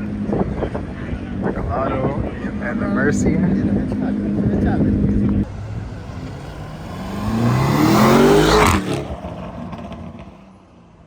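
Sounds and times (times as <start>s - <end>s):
car engine revving: 5.4s - 10.3s.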